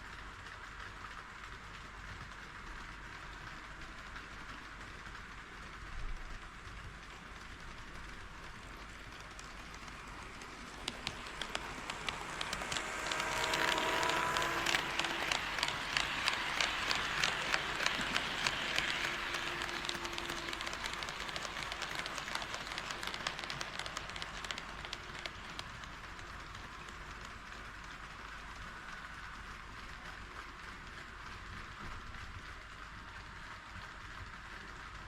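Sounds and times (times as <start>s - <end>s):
model train wheels clicking: 0.0s - 35.0s
train running rush: 6.5s - 31.4s
motor whine: 10.1s - 23.2s.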